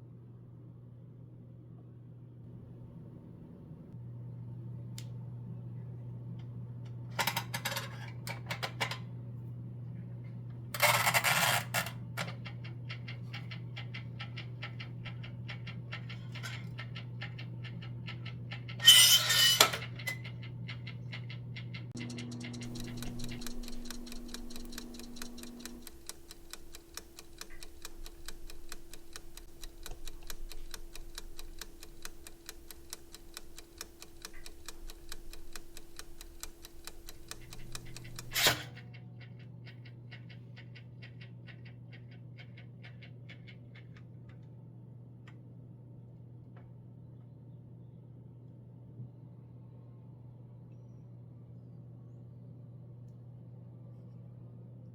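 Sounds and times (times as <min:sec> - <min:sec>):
toaster timer ticking: 0:12.2 - 0:19.0, 0:20.1 - 0:38.8
low hum: 0:22.0 - 0:38.4
toaster popping up clack: 0:37.8 - 0:38.8.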